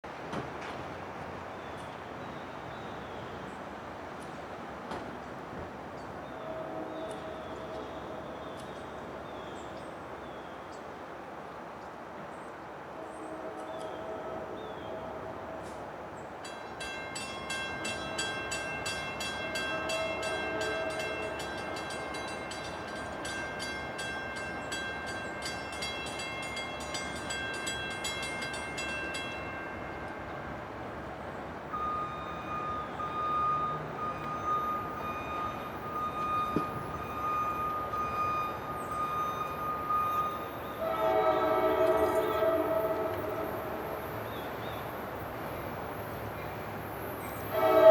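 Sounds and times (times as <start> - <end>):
train arriving: 0.1 - 47.9
train horn chord: 6.3 - 8.4, 13.0 - 15.8, 19.5 - 22.2, 31.8 - 44.1, 47.4 - 47.9.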